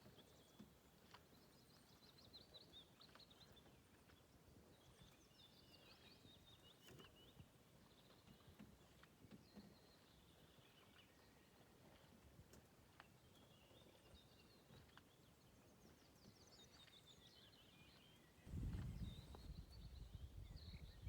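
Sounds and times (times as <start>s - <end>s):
faint bird twittering: 18.5s - 21.0s.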